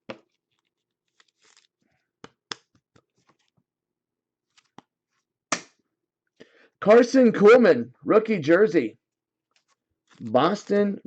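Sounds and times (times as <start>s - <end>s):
cards rustling: 0.1s - 3.6s, 4.4s - 5.3s, 9.5s - 10.8s.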